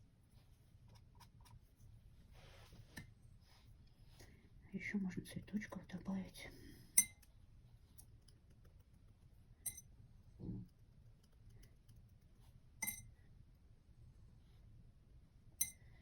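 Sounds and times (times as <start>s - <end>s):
paintbrush clinking on glass jar: 7.0s - 7.3s, 9.6s - 9.9s, 12.8s - 13.1s, 15.6s - 15.8s.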